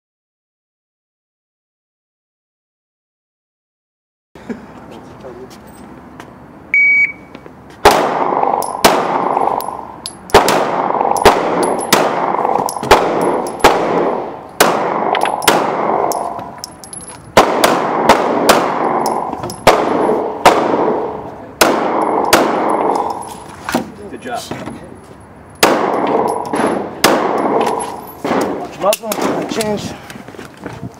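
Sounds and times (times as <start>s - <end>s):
shot timer beep: 6.7s - 7.3s
pistol shots ringing: 7.8s - 23.4s, 25.6s - 29.4s.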